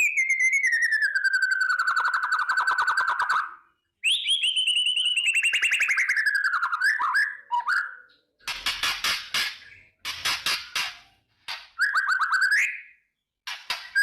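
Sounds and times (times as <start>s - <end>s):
bird harsh crackling rasps: 8.4s - 12.6s.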